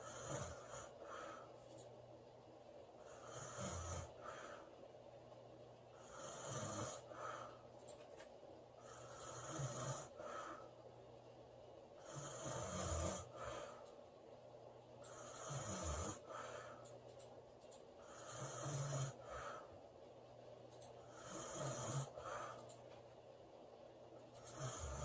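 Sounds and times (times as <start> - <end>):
woman snoring: 0.0 - 1.1, 3.0 - 4.4, 6.0 - 7.3, 8.8 - 10.6, 12.0 - 13.6, 15.1 - 16.6, 18.0 - 19.5, 21.0 - 22.5, 24.4 - 25.0.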